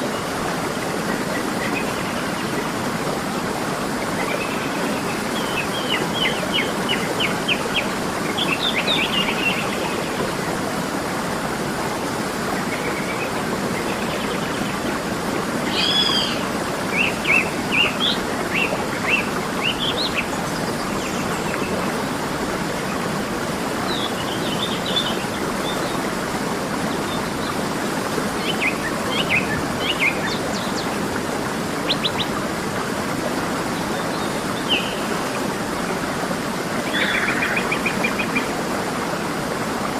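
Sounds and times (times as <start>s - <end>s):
waterfall rushing: 0.0s - 39.9s
birds chirping: 15.7s - 21.8s, 36.8s - 38.5s.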